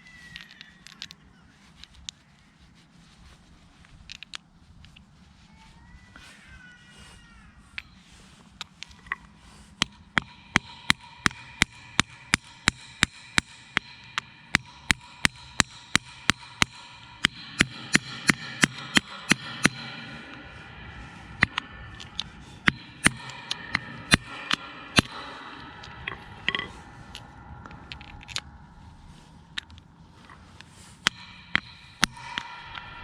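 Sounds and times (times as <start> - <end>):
hammer striking metal: 8.2 - 33.0.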